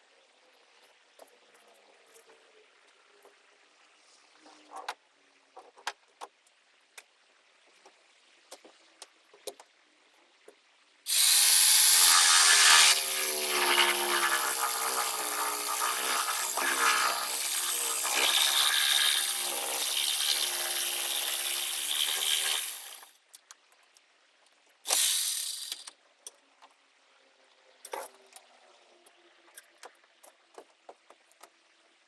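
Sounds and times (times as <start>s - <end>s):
electric power tool cutting: 11.1s - 23.1s.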